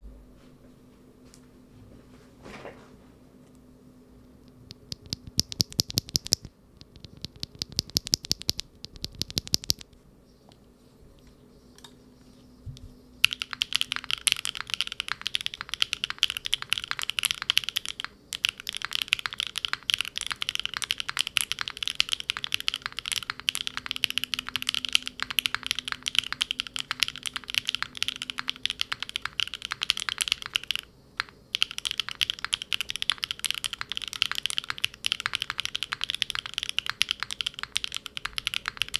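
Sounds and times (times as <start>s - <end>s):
mechanical keyboard typing: 4.5s - 9.9s, 13.2s - 38.9s.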